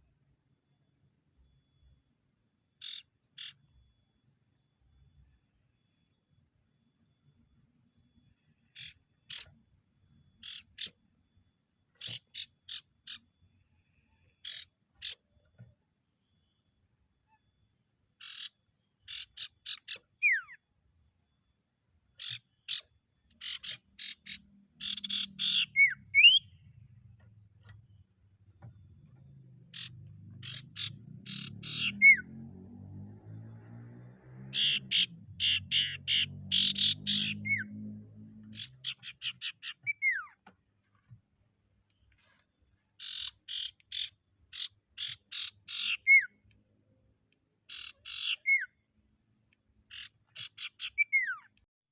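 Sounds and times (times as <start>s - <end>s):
bird chirping: 2.8s - 3.8s, 8.1s - 15.8s, 17.2s - 20.7s, 21.9s - 41.2s, 41.9s - 46.6s, 47.3s - 48.9s, 49.7s - 51.7s.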